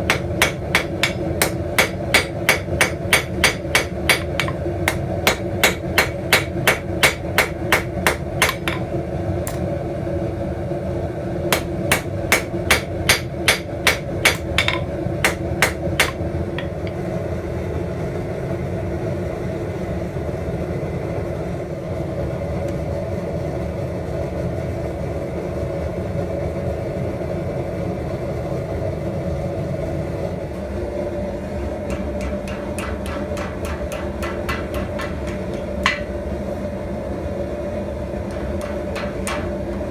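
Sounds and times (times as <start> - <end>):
hammer striking steel on anvil: 0.0 - 9.6, 11.5 - 17.0, 31.8 - 36.4, 38.3 - 39.9
steady background hum: 0.0 - 39.9.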